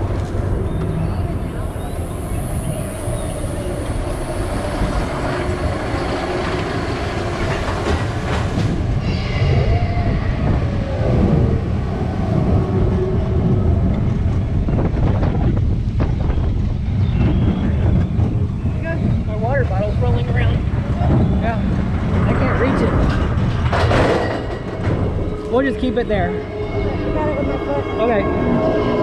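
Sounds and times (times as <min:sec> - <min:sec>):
roller coaster rumbling on track: 0:00.0 - 0:29.0
faint squeals: 0:09.0 - 0:13.1, 0:24.2 - 0:29.0.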